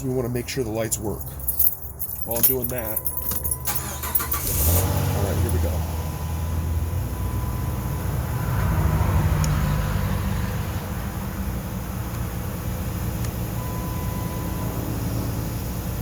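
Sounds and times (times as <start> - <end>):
car engine idling: 0.0 - 8.2.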